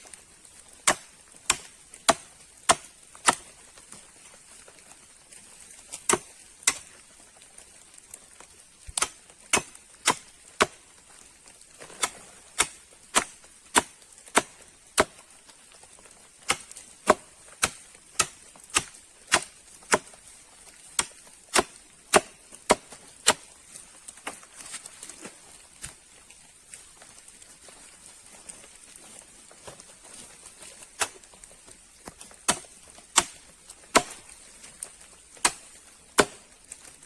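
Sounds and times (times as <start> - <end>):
wood being chopped by hand: 0.8 - 3.5, 5.9 - 6.9, 9.0 - 10.8, 11.8 - 15.2, 16.5 - 20.2, 21.0 - 23.5, 32.4 - 34.3, 35.4 - 36.5.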